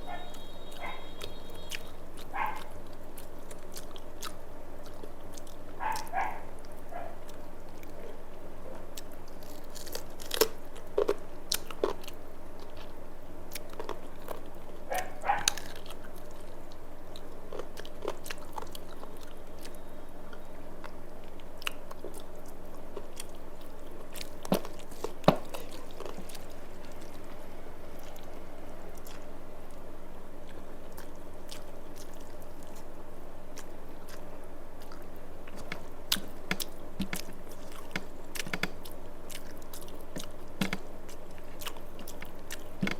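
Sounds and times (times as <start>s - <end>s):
person chewing food: 0.0s - 42.9s.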